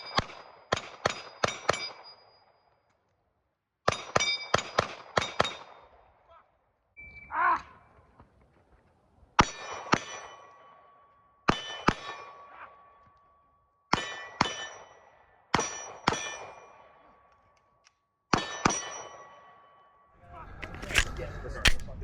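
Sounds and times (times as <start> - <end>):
pistol shots: 3.9 - 6.0, 20.6 - 22.0.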